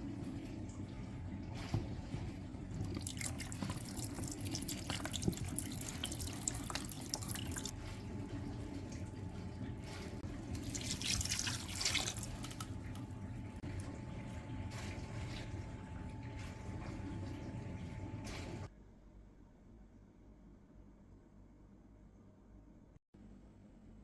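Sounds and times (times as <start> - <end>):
tap water splashing into sink: 0.2 - 17.6.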